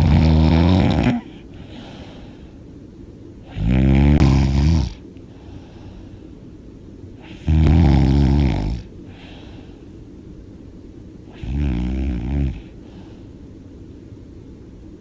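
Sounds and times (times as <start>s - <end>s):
woman snoring loudly: 0.0s - 1.3s, 3.5s - 5.0s, 7.3s - 8.8s
soft breath out: 1.3s - 2.6s, 5.3s - 6.4s, 9.1s - 10.0s, 12.8s - 13.5s.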